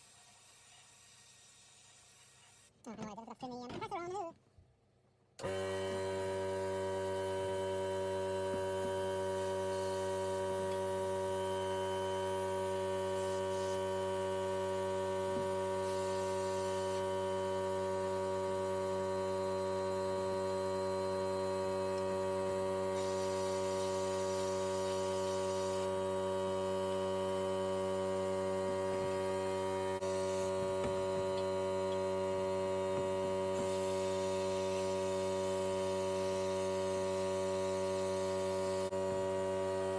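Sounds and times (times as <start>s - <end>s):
air compressor humming: 5.4s - 39.9s
air hiss: 23.0s - 25.9s.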